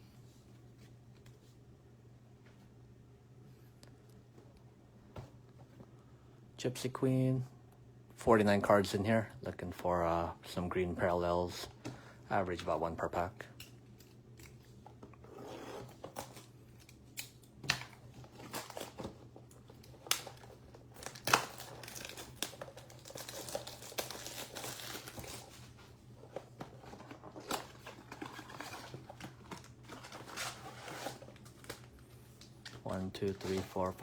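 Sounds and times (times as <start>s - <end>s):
plastic wrapping crinkling: 17.9s - 25.7s.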